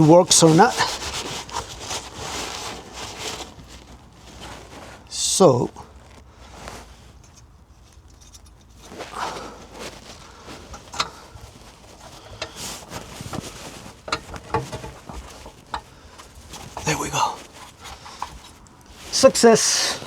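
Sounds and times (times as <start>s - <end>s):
metal socket clicking and scraping: 7.2s - 8.9s.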